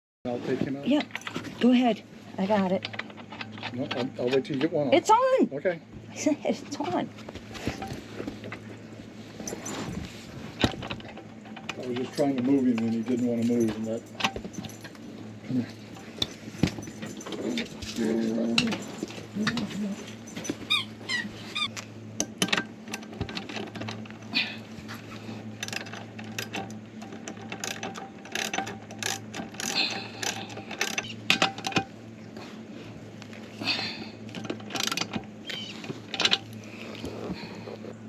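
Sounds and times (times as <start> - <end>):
steady low hum: 0.3 - 38.0
metal clicks and rattles: 2.7 - 4.7, 22.2 - 24.2, 25.6 - 31.9, 34.3 - 36.6.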